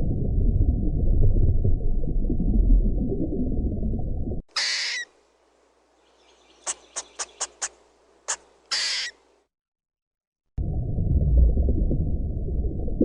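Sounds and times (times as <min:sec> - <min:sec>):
long high animal call: 0:04.5 - 0:05.1, 0:08.7 - 0:09.2
short sharp animal calls: 0:04.5 - 0:05.2, 0:06.6 - 0:09.2.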